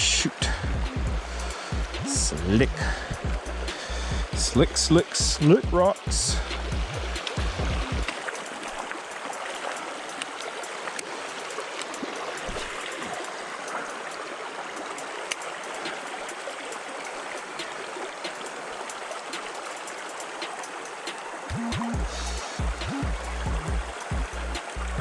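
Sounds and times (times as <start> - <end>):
river water over rocks: 0.1 - 25.0
small ticks: 6.0 - 24.9.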